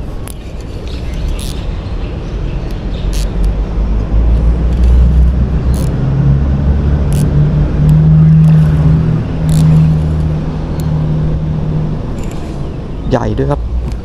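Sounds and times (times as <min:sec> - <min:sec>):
engine rumbling: 0:00.0 - 0:14.0
sharp clicks: 0:02.6 - 0:03.6, 0:04.3 - 0:06.0, 0:07.1 - 0:08.8, 0:09.5 - 0:10.9.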